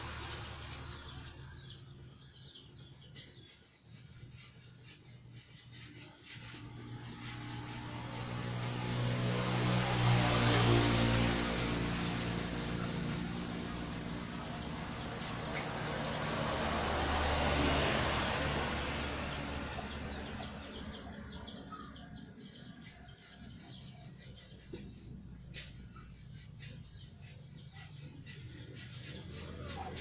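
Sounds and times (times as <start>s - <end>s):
motorcycle engine running: 6.7s - 16.5s.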